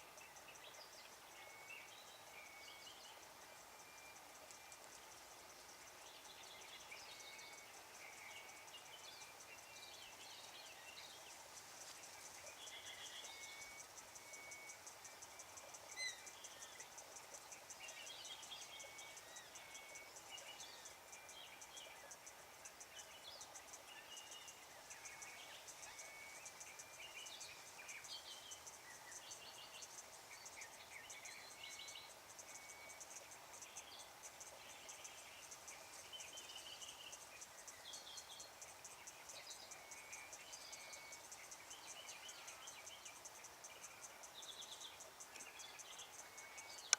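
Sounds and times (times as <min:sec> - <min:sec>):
high insect trill: 0:00.0 - 0:46.9.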